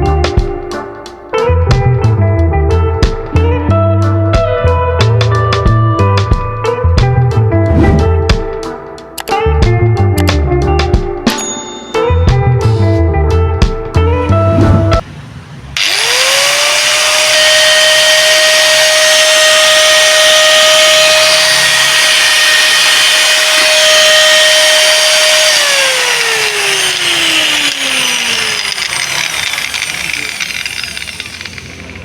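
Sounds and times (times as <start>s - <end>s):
angle grinder whining: 15.8s - 32.0s.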